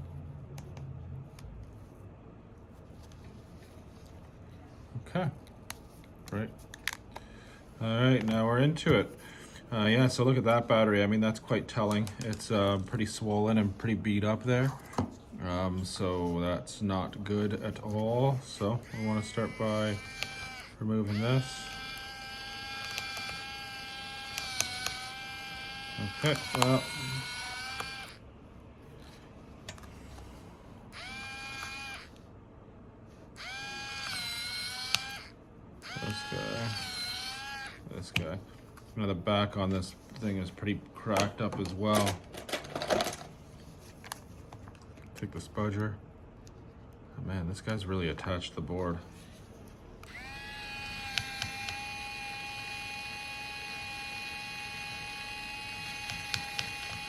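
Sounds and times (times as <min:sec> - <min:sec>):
small electric tool motor whining: 0:18.1 - 0:28.2, 0:30.9 - 0:32.2, 0:33.4 - 0:37.9, 0:50.0 - 0:57.0
sharp clicks: 0:33.4 - 0:38.3.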